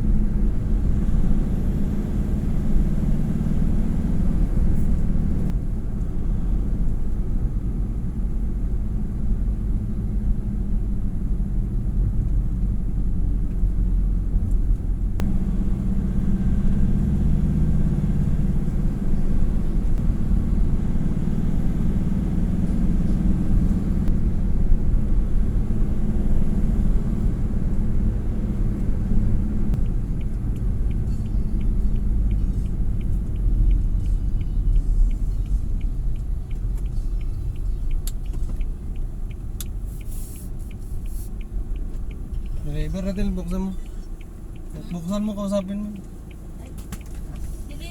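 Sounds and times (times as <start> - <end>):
vehicle engine and road rumble: 0.0 - 47.9
rapid light ticks: 29.7 - 47.9.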